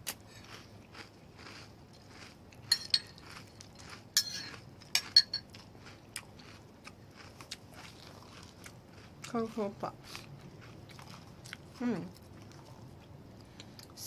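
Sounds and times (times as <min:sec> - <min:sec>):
cereal crunching: 0:00.0 - 0:12.8
spoon clinking against cup: 0:02.7 - 0:03.2, 0:04.2 - 0:05.5.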